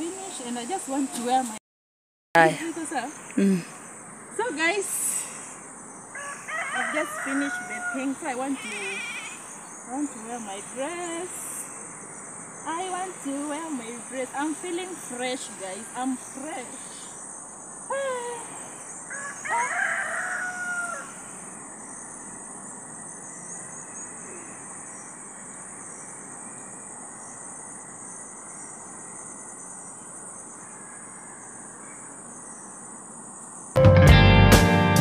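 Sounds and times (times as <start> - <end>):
steady high hiss: 2.4 - 6.1, 6.9 - 19.0
rooster crowing: 6.1 - 9.5, 19.1 - 21.5, 30.6 - 32.1.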